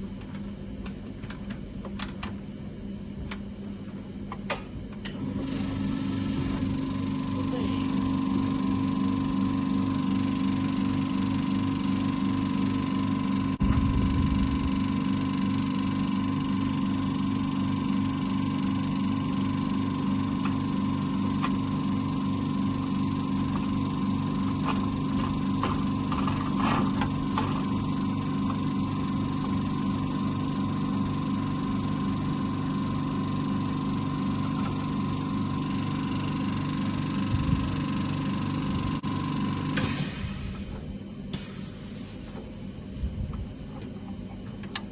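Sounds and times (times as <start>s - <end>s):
steady machine hum: 0.0s - 44.9s
pulsing low rumble: 13.6s - 15.0s.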